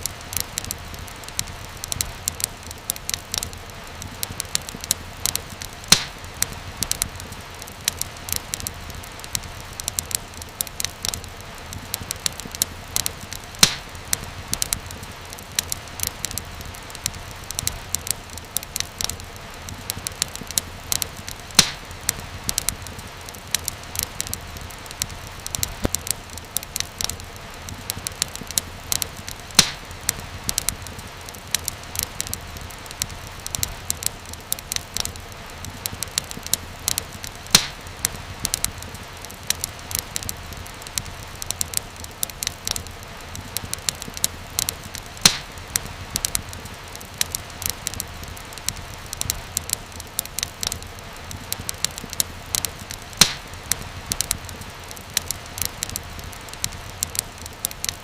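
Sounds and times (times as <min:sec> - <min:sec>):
loud pops of fire: 0:00.0 - 0:58.0
wood fire crackling: 0:00.0 - 0:58.0.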